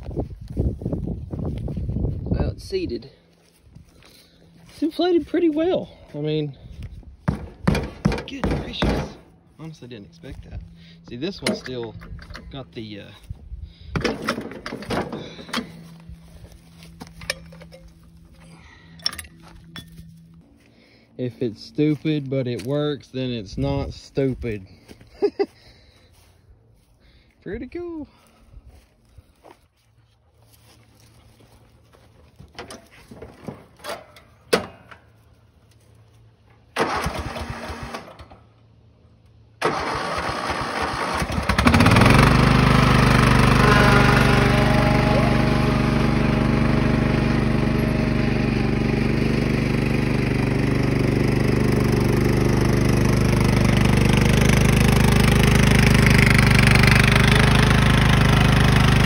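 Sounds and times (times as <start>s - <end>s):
mower engine running: 0.2s - 59.0s
starter motor cranking: 36.7s - 38.4s, 39.6s - 59.0s.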